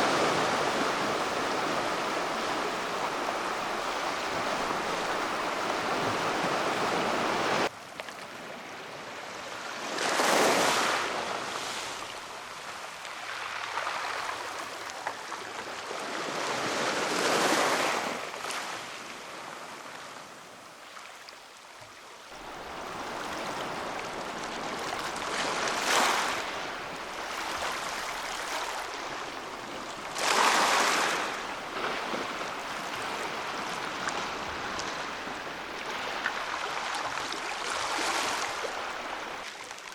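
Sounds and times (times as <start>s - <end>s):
waves breaking: 0.0s - 8.6s, 22.3s - 39.9s.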